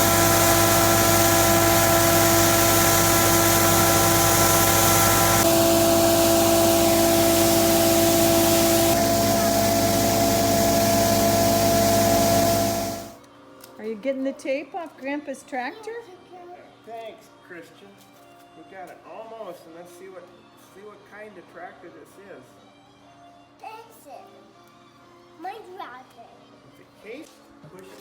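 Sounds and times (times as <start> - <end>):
combine harvester running: 0.0 - 13.2.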